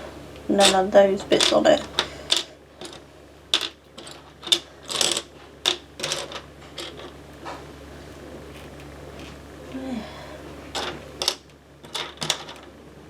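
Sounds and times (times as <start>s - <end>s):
plastic bricks clicking: 1.4s - 7.2s, 10.7s - 12.7s.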